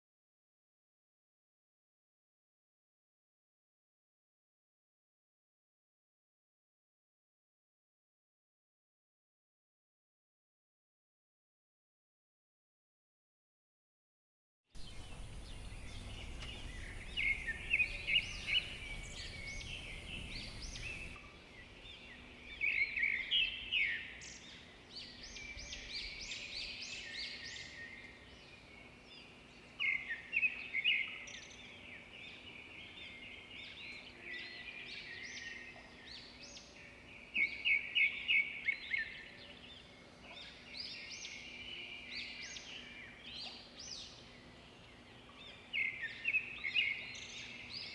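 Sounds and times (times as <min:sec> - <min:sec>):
faint steady hum: 0:14.8 - 0:22.9
birds chirping: 0:14.8 - 0:47.9.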